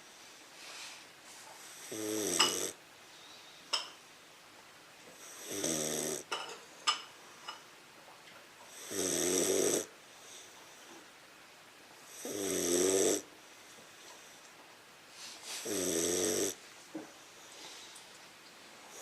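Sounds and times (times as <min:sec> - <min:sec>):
puppy snoring: 0:01.6 - 0:02.8, 0:05.1 - 0:06.4, 0:08.7 - 0:10.5, 0:12.1 - 0:13.3, 0:15.6 - 0:16.6.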